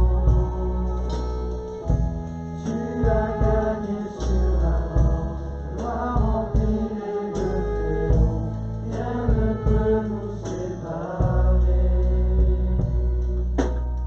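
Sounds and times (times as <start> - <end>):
heavy bass: 0.0 - 14.0
music with singing voices: 0.0 - 14.0.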